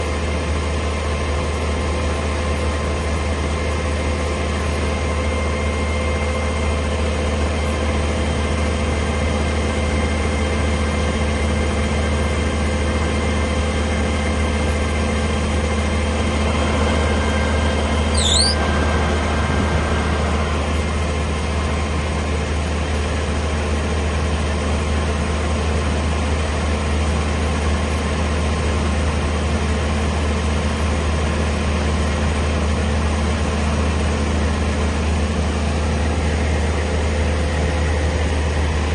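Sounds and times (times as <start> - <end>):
diesel engine idling: 0.0 - 38.9
short high squeak: 18.0 - 18.7.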